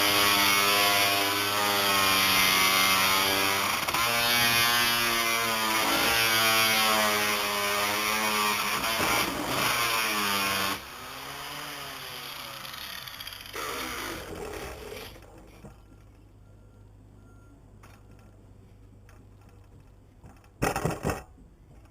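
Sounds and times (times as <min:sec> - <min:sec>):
grinder whining on wood: 0:00.0 - 0:15.8.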